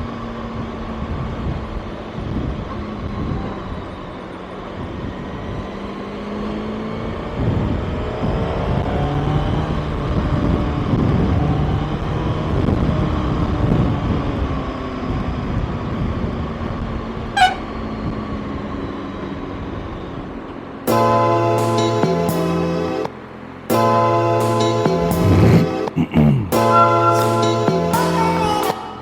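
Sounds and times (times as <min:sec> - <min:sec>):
wind and road noise: 0:00.0 - 0:21.6, 0:22.4 - 0:24.3
horn toot: 0:17.4 - 0:17.7, 0:20.9 - 0:23.1, 0:23.7 - 0:29.0.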